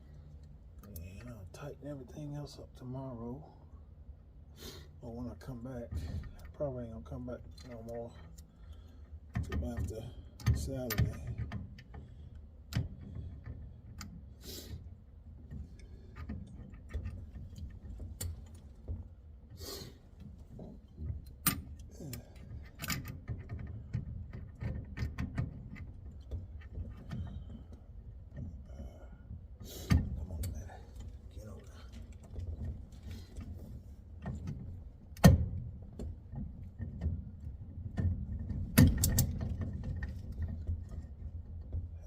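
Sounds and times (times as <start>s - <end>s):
low steady rumble: 0.0s - 42.0s.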